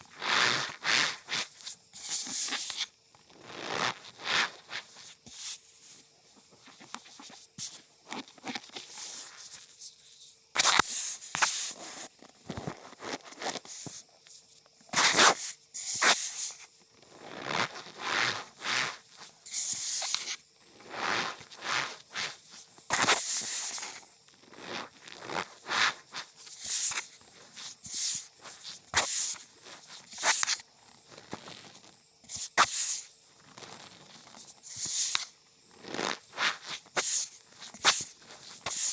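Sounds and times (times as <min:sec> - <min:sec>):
cornstarch squeaking and crunching: 0:00.1 - 0:04.9, 0:17.1 - 0:38.9.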